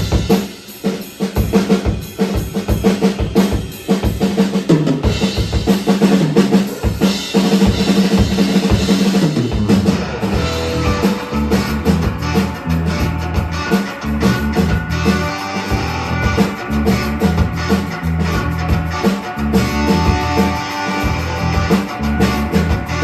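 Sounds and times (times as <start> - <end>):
rock drum kit beat: 0.0 - 23.0
sustained band notes: 8.6 - 23.0.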